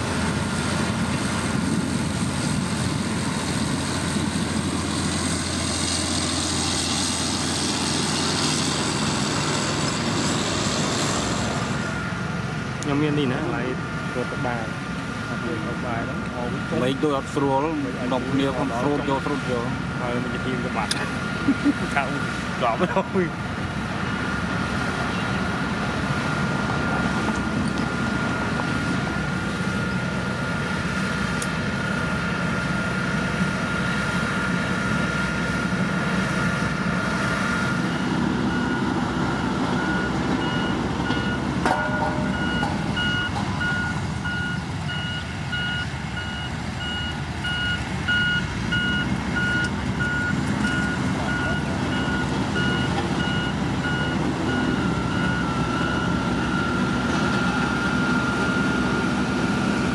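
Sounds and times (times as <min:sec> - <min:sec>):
heavy diesel engine running: 0:00.0 - 0:59.9
reversing alarm beeping: 0:11.3 - 0:12.2, 0:12.9 - 0:17.0, 0:37.0 - 0:59.9
steady high tone: 0:37.5 - 0:45.6.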